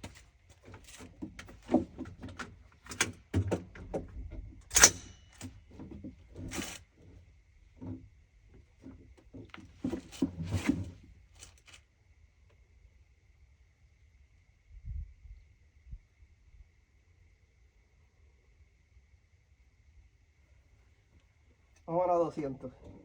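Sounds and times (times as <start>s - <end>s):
handling clicks and knocks: 0.0s - 6.9s.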